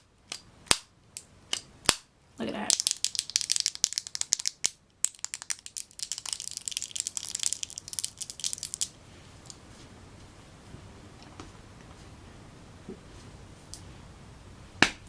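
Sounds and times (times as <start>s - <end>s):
packaging crinkling: 2.8s - 9.0s.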